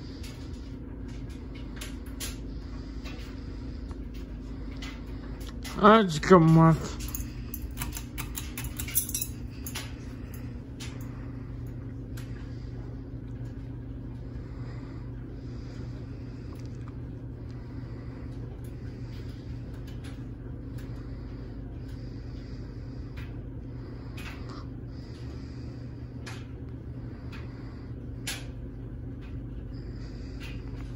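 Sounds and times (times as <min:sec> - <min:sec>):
ceiling fan motor hum: 0:00.0 - 0:30.9
light clinks: 0:06.9 - 0:10.5.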